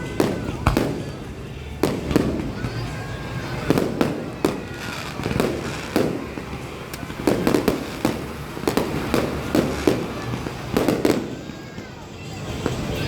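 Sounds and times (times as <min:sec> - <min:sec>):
firework shells bursting: 0:03.6 - 0:11.7.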